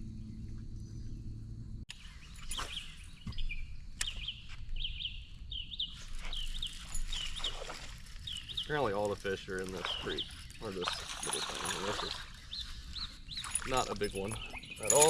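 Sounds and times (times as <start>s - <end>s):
low steady hum: 0.0s - 1.9s
songbird chirping: 0.0s - 15.0s.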